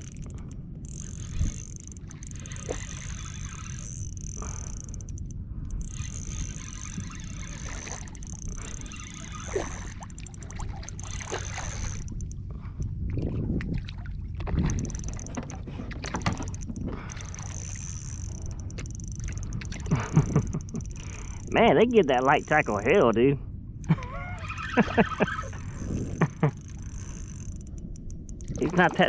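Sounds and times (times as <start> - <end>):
water splashing around kayak: 0.0 - 23.2, 28.3 - 29.0
wind rumble on microphone: 0.0 - 29.0
handling knocks and clicks: 14.4 - 21.5.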